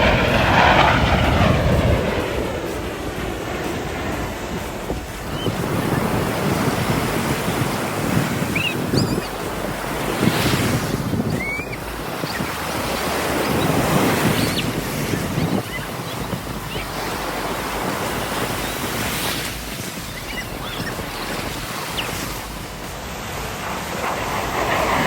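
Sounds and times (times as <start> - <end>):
ocean surf: 0.0 - 25.0
wind on microphone: 0.0 - 25.0
faint high chirps: 8.5 - 9.4, 11.3 - 12.6, 18.6 - 22.2.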